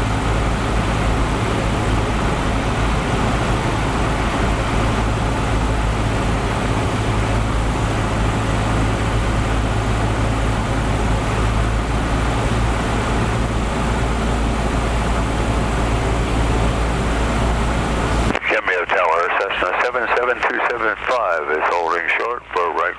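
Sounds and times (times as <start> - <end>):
propeller plane engine drone: 0.0 - 22.9
airflow noise: 17.2 - 18.4.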